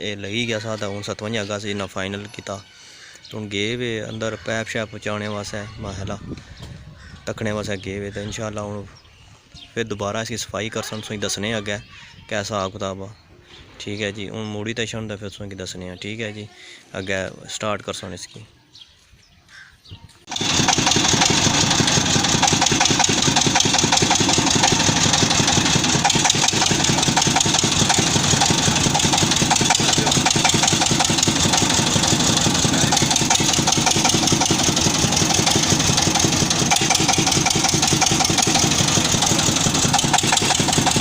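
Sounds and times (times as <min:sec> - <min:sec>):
boring machine engine running: 0:20.3 - 0:41.0.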